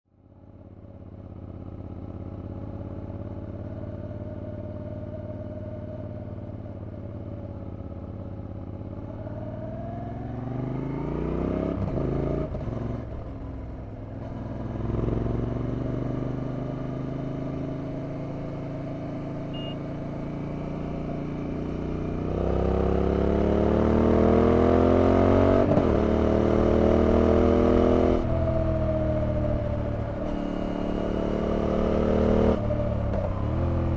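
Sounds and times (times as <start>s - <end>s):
motorcycle engine revving: 7.7s - 13.4s, 14.0s - 33.9s.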